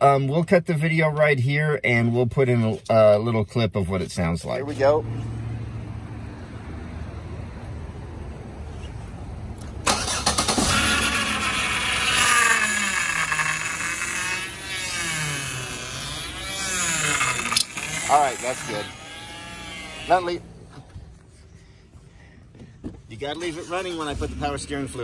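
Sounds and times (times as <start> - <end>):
car engine idling: 9.5 - 21.0
power steering pump whining grind: 9.8 - 20.9, 23.0 - 25.0.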